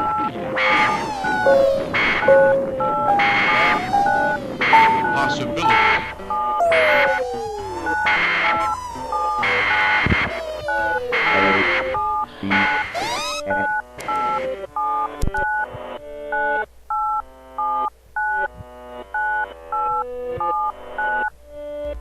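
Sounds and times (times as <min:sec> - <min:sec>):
low electronic notes: 0:00.5 - 0:05.5, 0:06.1 - 0:13.6.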